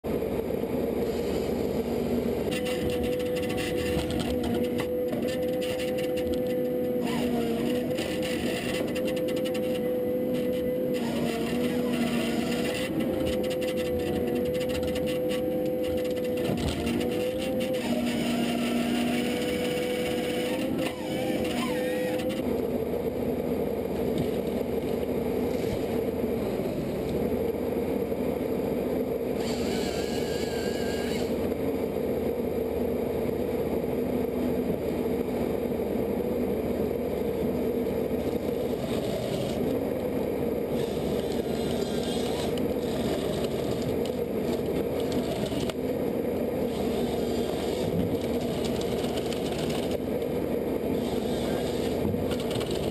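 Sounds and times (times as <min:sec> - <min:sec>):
heavy machine engine drone: 0:00.0 - 0:52.9.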